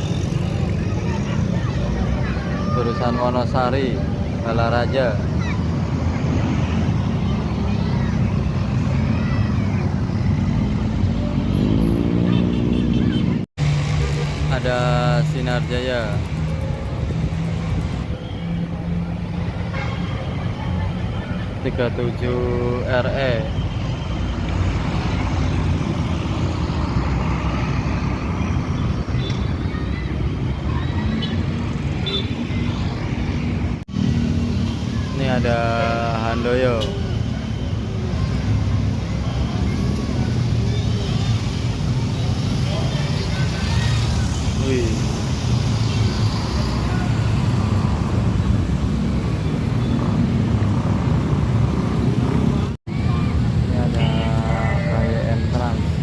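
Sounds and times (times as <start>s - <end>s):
heavy road traffic rumble: 0.0s - 56.0s
buses passing close by: 23.1s - 35.4s, 36.0s - 56.0s.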